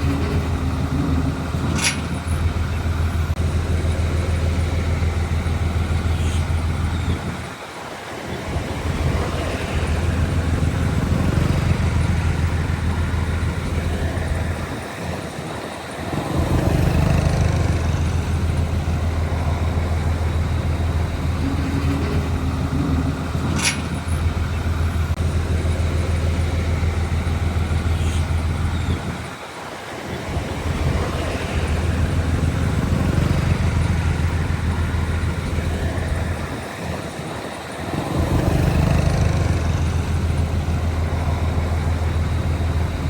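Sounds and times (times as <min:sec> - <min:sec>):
diesel machinery engine drone: 0:00.0 - 0:43.0
sharp click: 0:01.7 - 0:02.4, 0:23.5 - 0:24.2.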